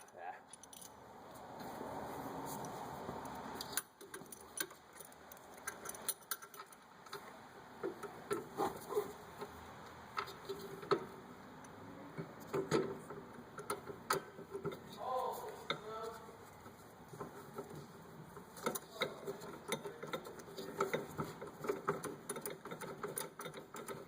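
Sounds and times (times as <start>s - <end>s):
metal tools clinking: 0.5s - 1.0s.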